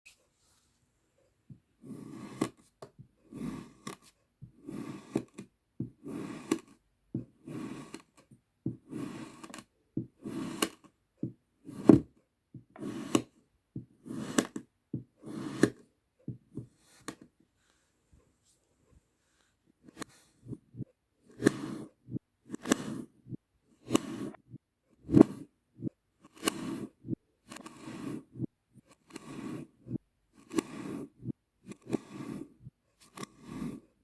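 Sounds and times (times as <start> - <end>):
blade slicing kinetic sand: 1.8 - 10.9, 11.6 - 12.1, 12.7 - 15.9, 19.8 - 20.4, 21.2 - 24.4, 25.0 - 25.5, 26.2 - 34.0.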